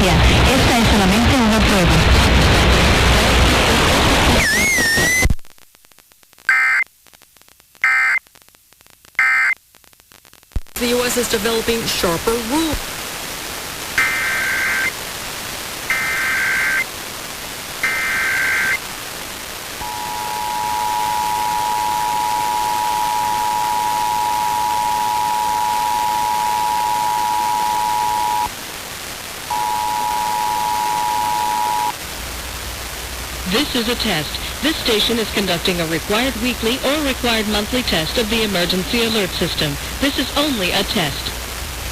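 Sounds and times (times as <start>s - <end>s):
steady hiss: 9.8s - 41.9s
data bursts: 14.0s - 15.0s, 15.9s - 16.9s, 17.8s - 18.8s, 19.8s - 28.5s, 29.5s - 32.0s.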